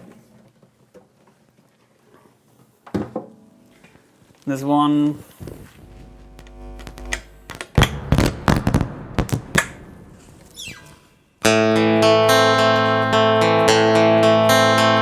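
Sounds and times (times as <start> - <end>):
acoustic guitar strummed: 5.3 - 15.0.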